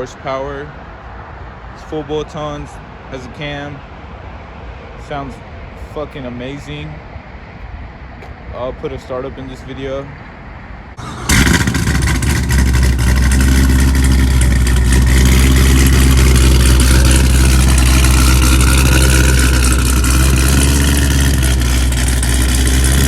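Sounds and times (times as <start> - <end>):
car engine starting and idling: 10.9 - 23.0.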